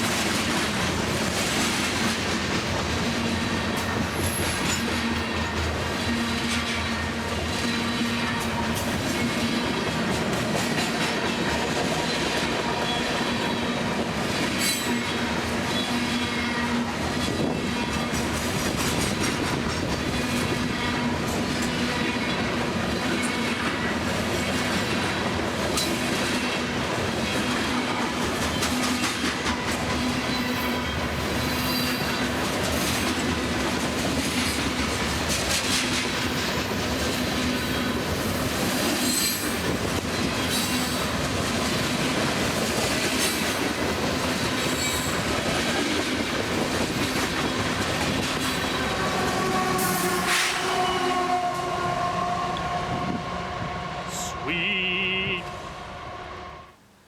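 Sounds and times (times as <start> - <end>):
train wheels rumbling on rail: 0.0 - 54.5
clacking over rail joints: 17.1 - 31.0.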